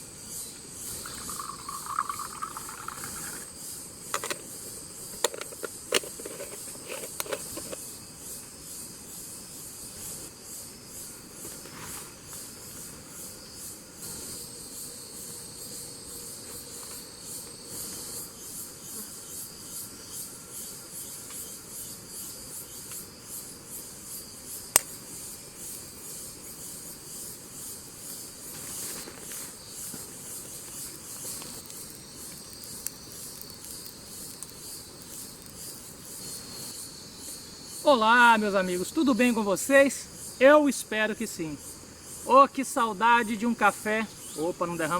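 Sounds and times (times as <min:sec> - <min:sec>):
insects chirring: 0:00.0 - 0:44.9
sharp click: 0:24.7 - 0:25.0.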